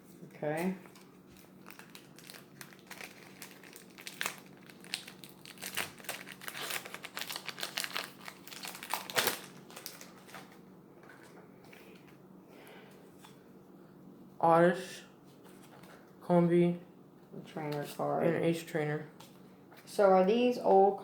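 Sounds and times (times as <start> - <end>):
foil wrapper crinkling: 0.5 - 10.6.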